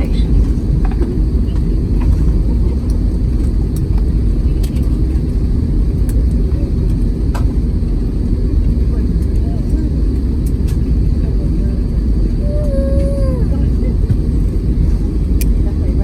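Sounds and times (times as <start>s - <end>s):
airliner cabin rumble: 0.0s - 16.0s.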